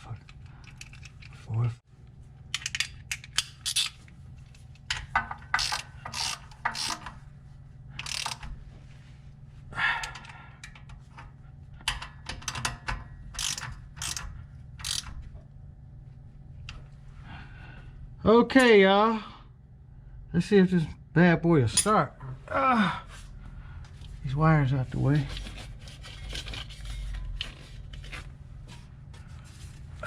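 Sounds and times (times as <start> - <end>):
ratchet wrench clicking: 2.6 - 3.9, 5.5 - 7.1, 8.0 - 8.5, 13.3 - 15.2.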